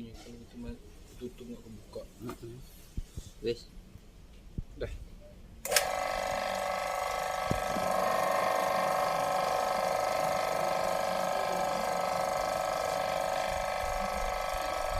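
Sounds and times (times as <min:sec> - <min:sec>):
pump running with mechanical drone: 0:05.6 - 0:14.9.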